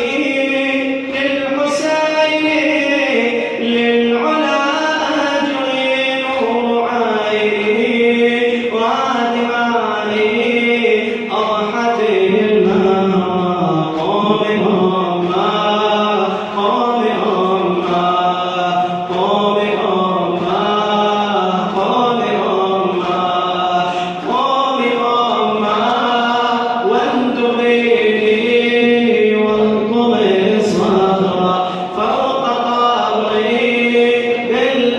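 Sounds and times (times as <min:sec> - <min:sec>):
person chanting an elegy: 0:11.4 - 0:23.0.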